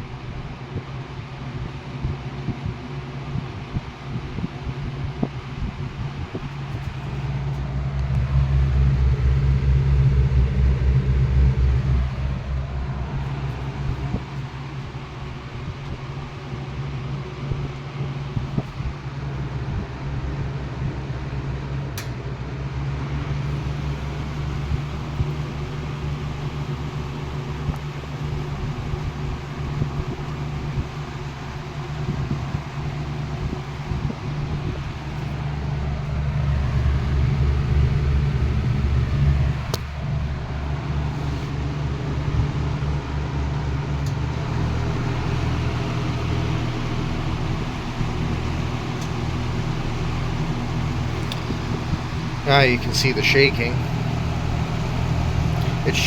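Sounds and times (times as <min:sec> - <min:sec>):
box fan humming with flutter: 0:00.0 - 0:56.0.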